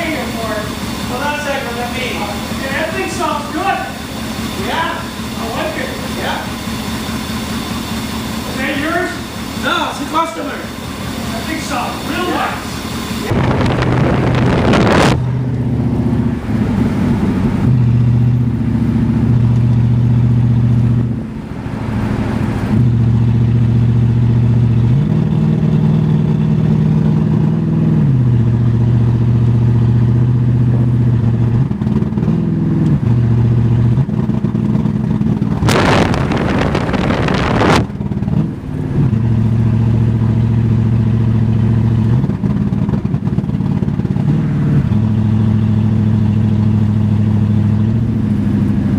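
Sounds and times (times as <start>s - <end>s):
car engine running: 0.0s - 48.9s
brief rushing noise: 35.6s - 38.0s.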